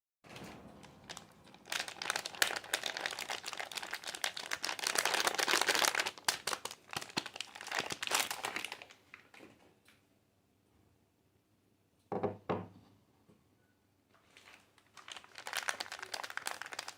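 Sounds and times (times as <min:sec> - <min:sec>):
packaging crinkling: 0:00.8 - 0:09.2, 0:14.2 - 0:16.9.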